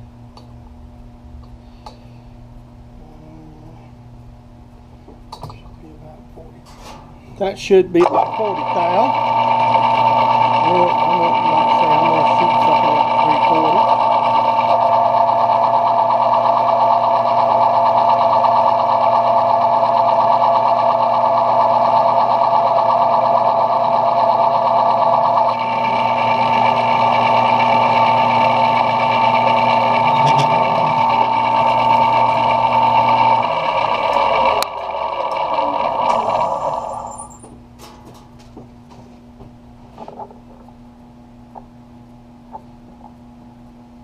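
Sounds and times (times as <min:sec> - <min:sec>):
metal lathe whining: 0:07.4 - 0:37.6
motor winding down: 0:07.7 - 0:37.6.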